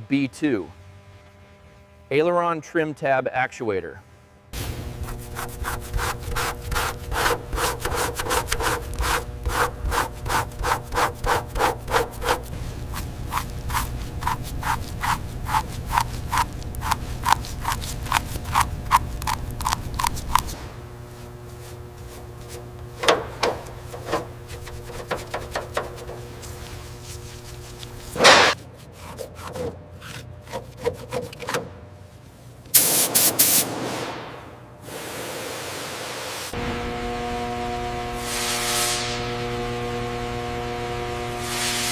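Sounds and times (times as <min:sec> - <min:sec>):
steady low hum: 0:00.0 - 0:34.9
hand tool rubbing strokes: 0:05.0 - 0:20.6, 0:21.2 - 0:31.5.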